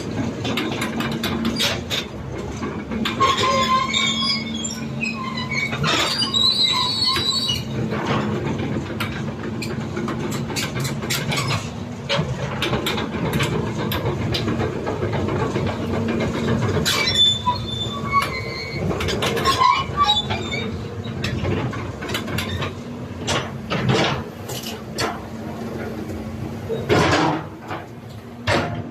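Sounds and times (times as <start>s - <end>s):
diesel engine running: 0.0s - 28.9s
metal-on-metal squeals: 3.0s - 7.8s, 16.8s - 21.5s.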